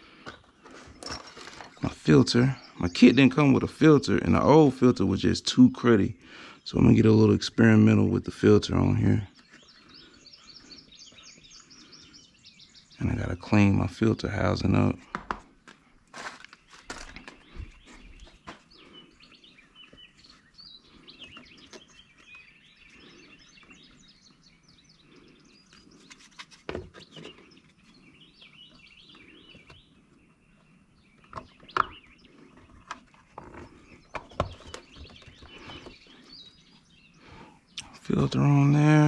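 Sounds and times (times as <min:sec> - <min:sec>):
birds chirping: 0:00.0 - 0:39.0
parts clicking and knocking: 0:00.2 - 0:01.8.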